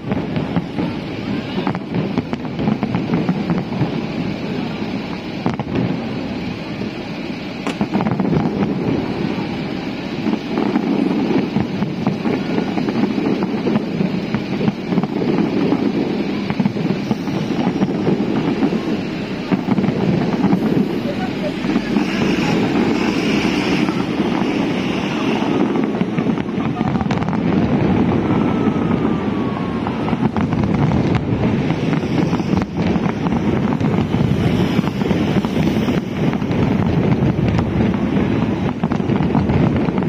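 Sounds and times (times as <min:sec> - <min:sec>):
fireworks bursting: 0:00.0 - 0:40.0.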